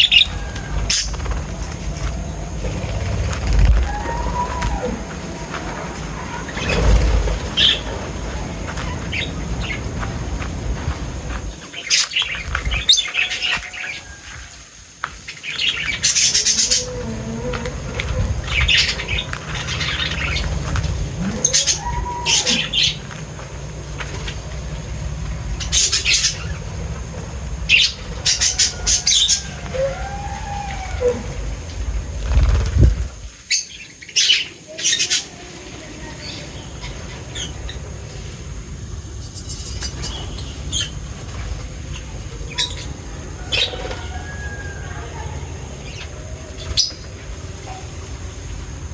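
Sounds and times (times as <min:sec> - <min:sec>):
low rumble: 0:00.0 - 0:13.6, 0:15.8 - 0:33.3
lower sliding bird calls: 0:00.0 - 0:14.2, 0:15.2 - 0:34.4
birds chirping: 0:00.0 - 0:48.9.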